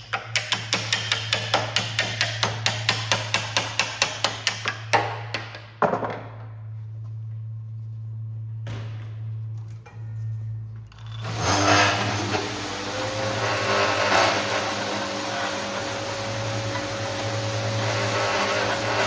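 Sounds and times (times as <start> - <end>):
hammer tapping: 0.1 - 5.6
steady low hum: 6.2 - 19.0.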